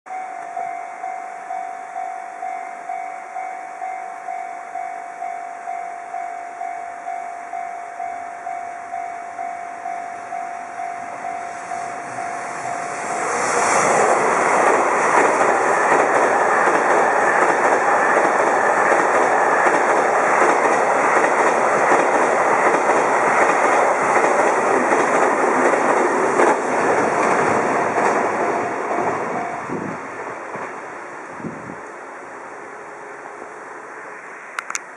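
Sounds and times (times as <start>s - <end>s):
level-crossing warning bell: 0.1s - 30.0s
train wheels clacking over rail joints: 13.1s - 29.3s.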